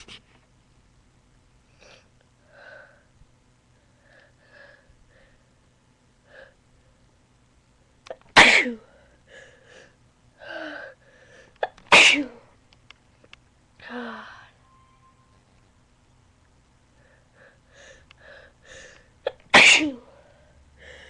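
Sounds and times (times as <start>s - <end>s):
person breathing: 1.8s - 3.1s, 3.8s - 5.6s, 8.8s - 11.6s, 13.8s - 14.6s, 16.9s - 19.2s, 20.0s - 21.0s
person sneezing loudly: 8.4s - 8.8s, 11.6s - 12.4s, 19.3s - 20.0s.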